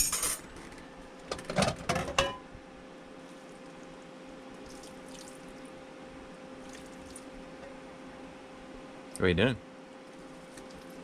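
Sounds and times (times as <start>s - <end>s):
kitchenware clattering: 0.0s - 0.5s, 1.5s - 2.4s
steady low hum: 0.0s - 11.0s.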